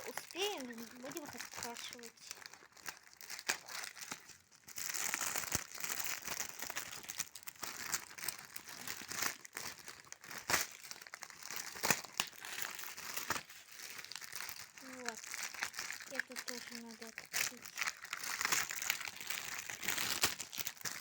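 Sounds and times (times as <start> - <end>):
paper crinkling and rustling: 0.0 - 21.0.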